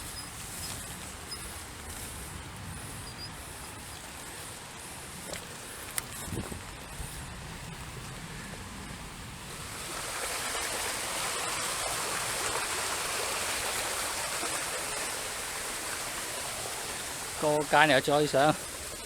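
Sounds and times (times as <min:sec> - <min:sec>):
faint ticks: 0:00.0 - 0:08.7
hiss of water: 0:00.0 - 0:08.7, 0:09.4 - 0:19.0.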